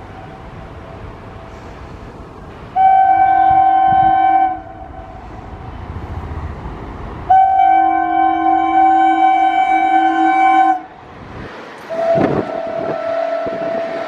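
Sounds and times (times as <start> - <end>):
train running noise: 0.0 - 14.0
two-note train horn blasts: 2.7 - 5.1, 7.3 - 10.9, 11.9 - 14.0.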